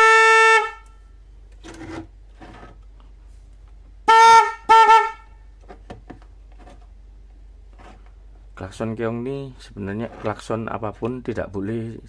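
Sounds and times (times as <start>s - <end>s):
electric car horn honks: 0.0s - 0.9s, 4.1s - 5.3s.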